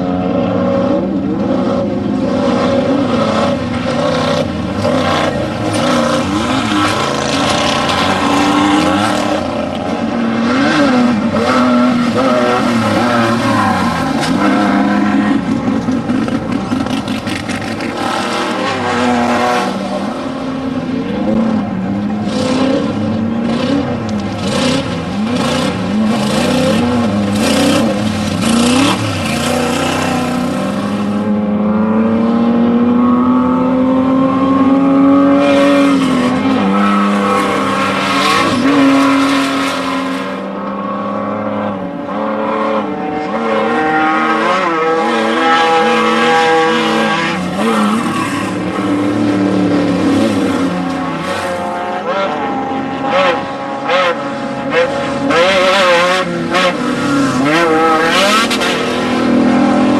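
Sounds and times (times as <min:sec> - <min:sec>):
race vehicle engines revving: 0:00.0 - 0:59.9.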